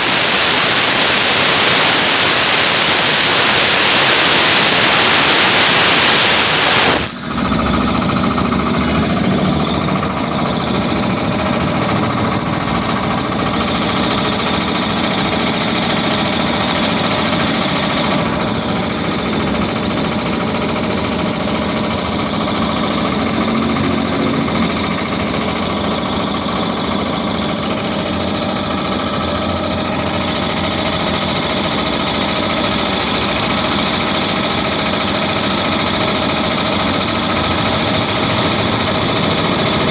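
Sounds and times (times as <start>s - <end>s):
loud air hiss: 0.0s - 23.6s
piston air compressor running: 0.0s - 39.9s.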